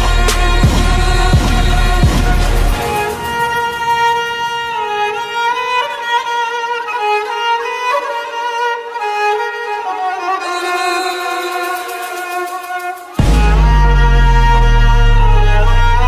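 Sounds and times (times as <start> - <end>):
deep bass beat: 0.0 - 3.7, 13.2 - 16.0
violin slow melody: 0.0 - 16.0.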